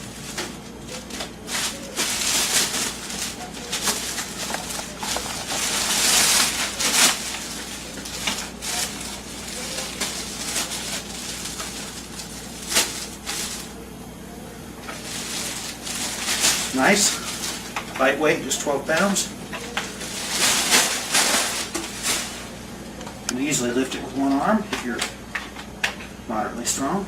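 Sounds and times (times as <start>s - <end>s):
rustling and scraping of handled objects: 0.0s - 13.7s, 14.9s - 18.1s, 18.9s - 22.6s
steady low hum: 0.0s - 27.0s.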